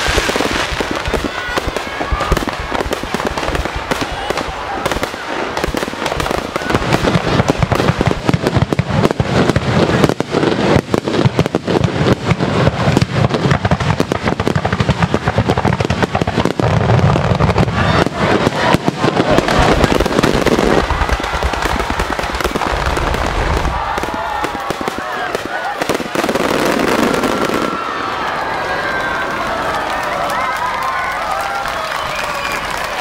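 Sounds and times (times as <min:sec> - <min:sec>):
fireworks banging and crackling: 0:00.0 - 0:33.0.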